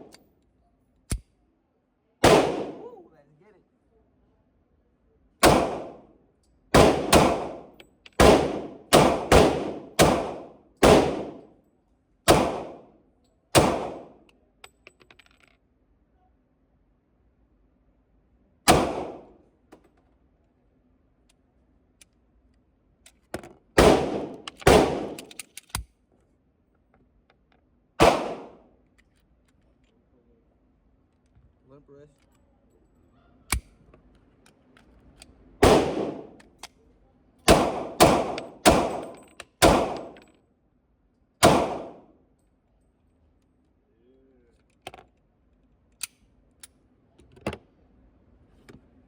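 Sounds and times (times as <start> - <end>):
handgun shots: 2.2 - 2.8, 5.4 - 6.0, 6.8 - 11.4, 12.3 - 12.8, 13.6 - 14.2, 18.7 - 19.3, 23.8 - 25.8, 28.0 - 28.6, 35.6 - 36.5, 37.5 - 40.2, 41.4 - 42.1.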